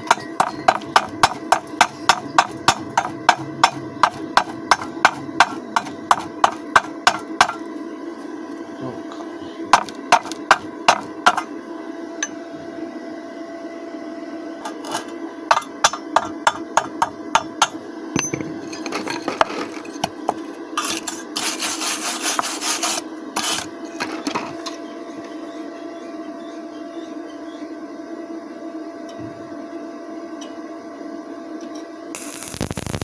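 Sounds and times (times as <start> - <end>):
hammer striking metal: 0.0 - 7.7, 9.8 - 11.5, 14.7 - 18.7
steady hum: 0.0 - 33.0
harsh scraping over metal: 18.6 - 24.2.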